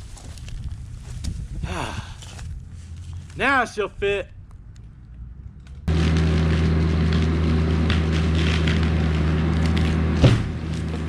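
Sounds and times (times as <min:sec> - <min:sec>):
crackling: 0:02.1 - 0:11.0
engine running: 0:04.3 - 0:11.0.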